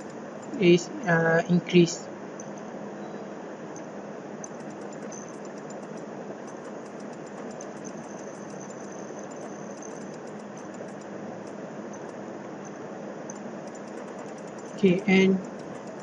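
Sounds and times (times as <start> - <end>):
faint high ticking: 3.8 - 16.0
small electric motor humming: 4.4 - 16.0.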